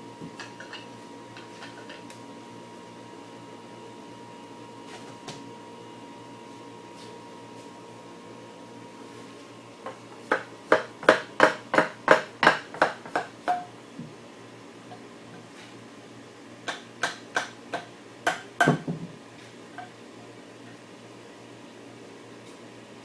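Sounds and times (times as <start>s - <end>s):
sharp knocks on wooden chair: 18.3s - 19.1s.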